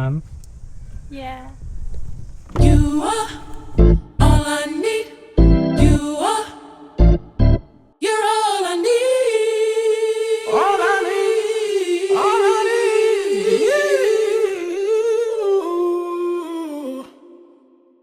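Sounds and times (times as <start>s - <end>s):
person singing wordless melody: 2.6s - 7.2s, 8.0s - 18.0s.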